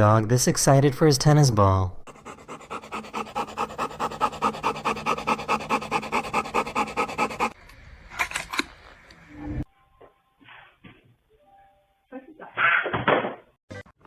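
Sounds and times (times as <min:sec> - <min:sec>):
dog panting fast: 0:02.1 - 0:07.6.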